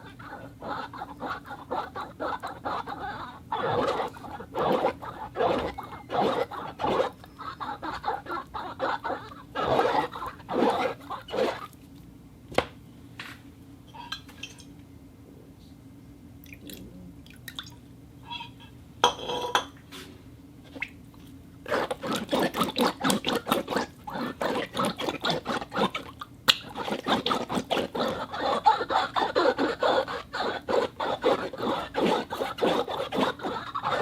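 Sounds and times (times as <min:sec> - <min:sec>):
wet skin rubbing on glass: 0:00.0 - 0:11.7, 0:21.7 - 0:34.0.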